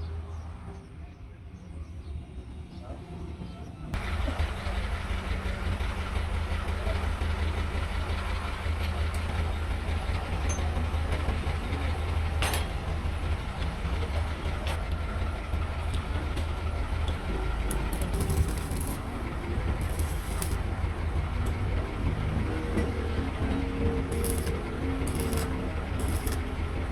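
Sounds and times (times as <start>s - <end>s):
engine idling: 4.0s - 26.9s
sharp metallic clicks: 17.7s - 19.2s, 19.8s - 20.6s, 24.1s - 26.5s.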